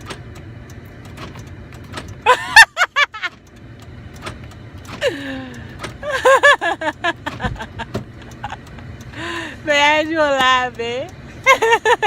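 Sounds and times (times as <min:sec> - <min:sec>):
car engine humming: 0:00.0 - 0:12.0
person laughing loudly: 0:02.2 - 0:03.3, 0:05.0 - 0:08.6, 0:11.4 - 0:12.0.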